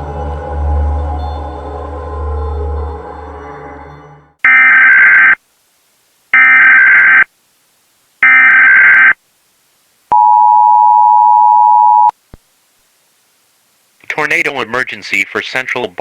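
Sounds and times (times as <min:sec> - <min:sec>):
two-tone attention signal: 0:04.5 - 0:05.4, 0:06.4 - 0:07.2, 0:10.1 - 0:12.1
warbling data tones: 0:04.5 - 0:05.4, 0:06.4 - 0:07.3, 0:08.2 - 0:09.2.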